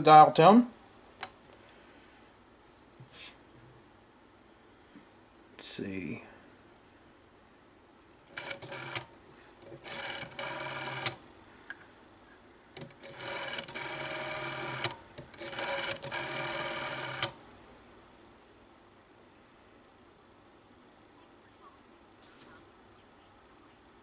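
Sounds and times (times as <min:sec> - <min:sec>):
rotary dial whirring and clicking: 0:08.3 - 0:11.2, 0:12.8 - 0:17.4.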